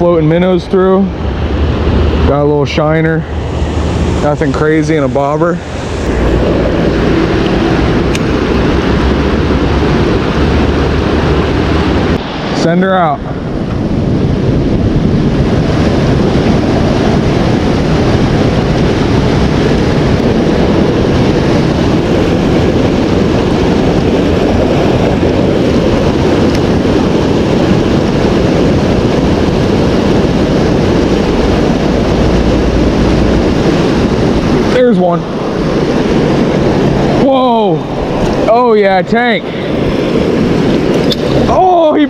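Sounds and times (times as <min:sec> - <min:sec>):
deep rumble: 0:00.0 - 0:42.0
wind buffeting microphone: 0:00.0 - 0:42.0
river water rushing: 0:01.1 - 0:13.6, 0:29.0 - 0:42.0.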